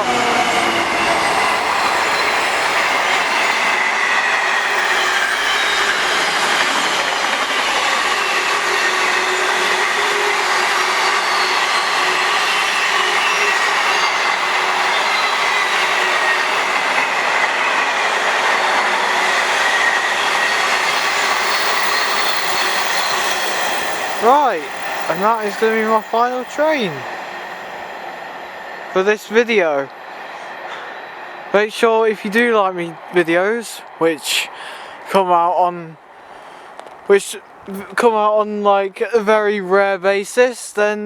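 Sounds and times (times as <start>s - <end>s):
high wheel squeal: 0.0s - 29.0s
train wheels rolling on rails: 0.0s - 38.3s.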